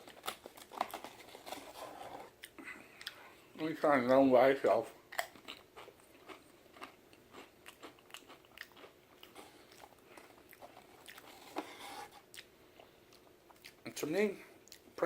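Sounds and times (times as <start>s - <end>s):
man crunching potato chip: 5.1s - 11.8s.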